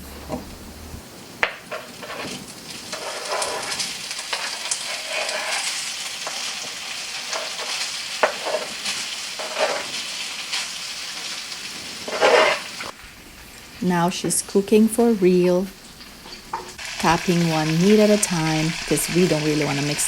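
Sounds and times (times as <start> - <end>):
food sizzling in a frying pan: 1.3 - 20.0
spatula scraping pan: 1.7 - 13.0.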